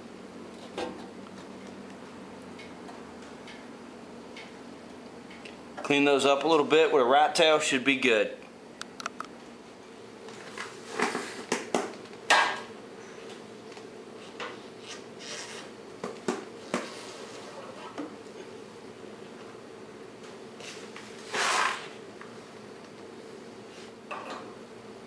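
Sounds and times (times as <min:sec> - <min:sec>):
faint steady hum: 0:00.0 - 0:25.0
rasping scrapes: 0:14.8 - 0:15.7, 0:21.2 - 0:22.0.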